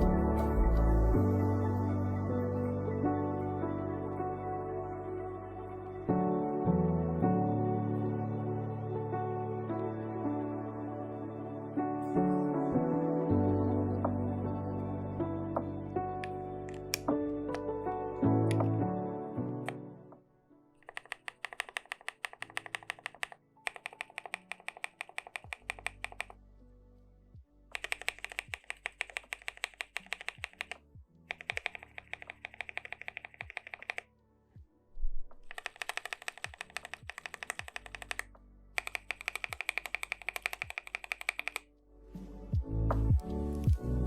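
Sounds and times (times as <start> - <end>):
soft background music: 0.0 - 44.0
mechanical keyboard typing: 20.8 - 26.4, 27.7 - 34.0, 35.4 - 41.7.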